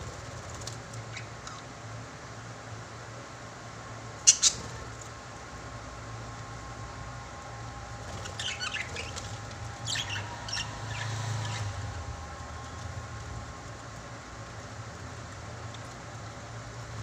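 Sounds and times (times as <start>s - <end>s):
steady low hum: 0.0s - 17.0s
small bird chirping: 1.0s - 1.7s, 4.2s - 4.9s, 8.0s - 12.1s.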